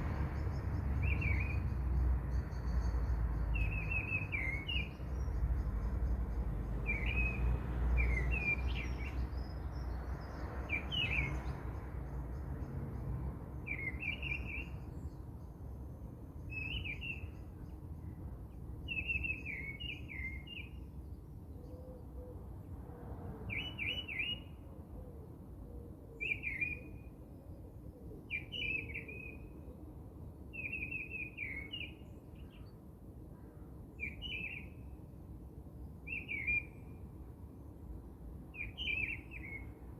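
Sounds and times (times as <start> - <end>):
bird chirping: 0.0 - 13.0.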